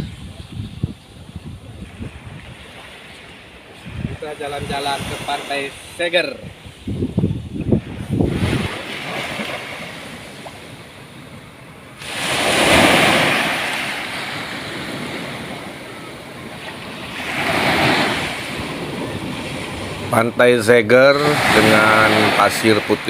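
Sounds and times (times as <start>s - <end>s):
ocean surf washing: 0.0s - 23.0s
wave breaking: 6.9s - 23.0s.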